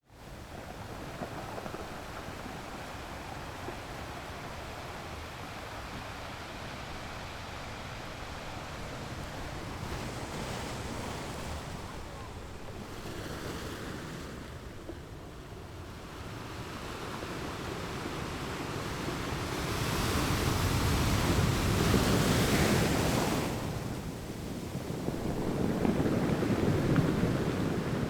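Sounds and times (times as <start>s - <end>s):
sea waves breaking on rocks: 7.6s - 28.0s.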